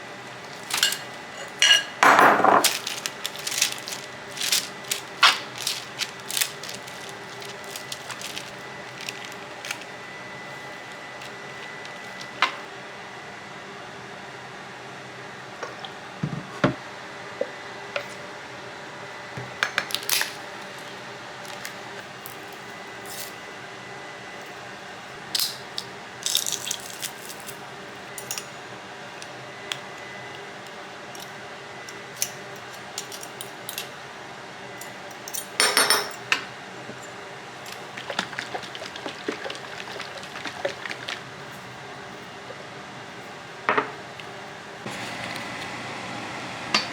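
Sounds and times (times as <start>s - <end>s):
dishes and utensils clinking: 0.6s - 9.8s, 35.3s - 36.4s.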